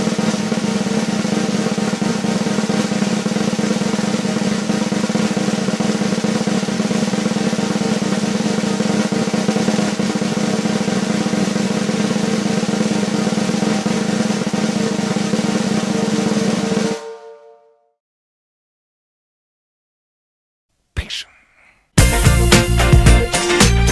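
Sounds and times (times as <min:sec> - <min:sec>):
drum roll: 0:12.0 - 0:17.0, 0:22.0 - 0:23.9.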